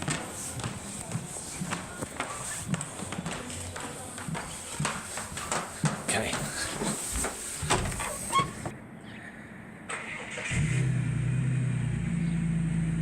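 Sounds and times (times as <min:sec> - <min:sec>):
car engine starting and running: 0:09.9 - 0:13.0.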